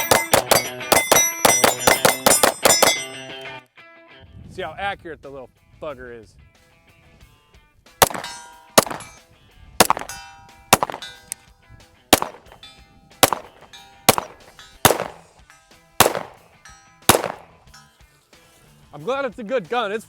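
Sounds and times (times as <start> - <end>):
pistol shots: 0.0 - 3.1, 8.0 - 9.2, 9.8 - 11.3, 12.1 - 15.4, 16.0 - 16.5, 17.1 - 17.6
metallic ringing: 0.0 - 3.4, 8.0 - 9.2, 9.8 - 11.5, 12.2 - 18.0.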